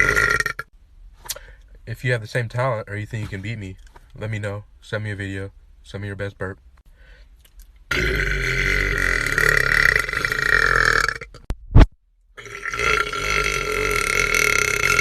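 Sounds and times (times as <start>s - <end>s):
man burping: 0.0s - 0.7s, 7.9s - 11.5s, 12.4s - 15.0s
short sharp pop: 11.5s - 12.0s.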